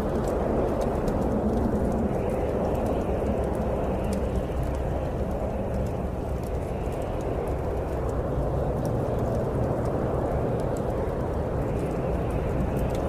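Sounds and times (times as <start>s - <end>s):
bonfire crackling: 0.0s - 13.0s
snowstorm wind rushing: 0.0s - 13.0s.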